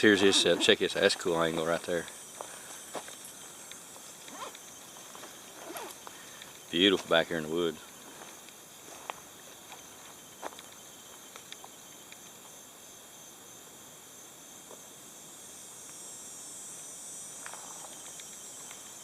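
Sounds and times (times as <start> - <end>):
insects buzzing: 0.0 - 19.0
faint clicks: 3.0 - 4.9, 6.0 - 6.6, 10.5 - 12.5, 17.4 - 18.9.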